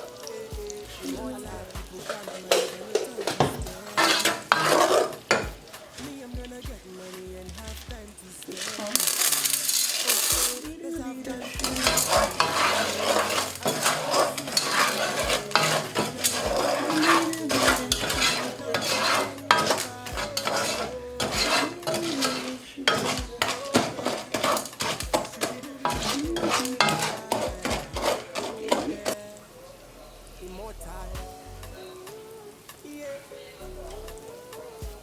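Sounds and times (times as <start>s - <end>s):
utensil scraping metal pot: 0.0s - 6.3s, 7.8s - 29.2s
oil sizzling: 0.0s - 35.0s.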